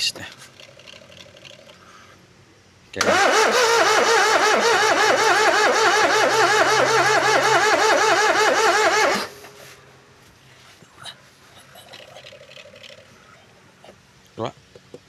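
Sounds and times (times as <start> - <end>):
starter motor cranking engine: 3.0 - 9.6.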